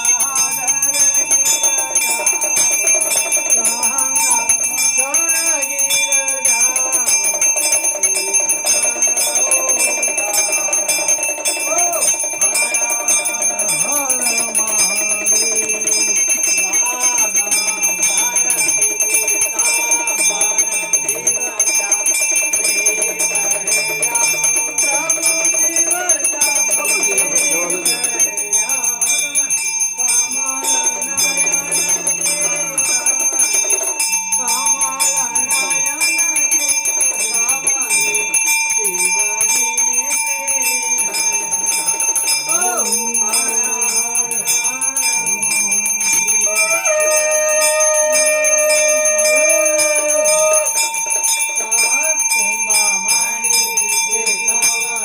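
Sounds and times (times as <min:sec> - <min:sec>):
bells ringing: 0:00.0 - 0:55.0.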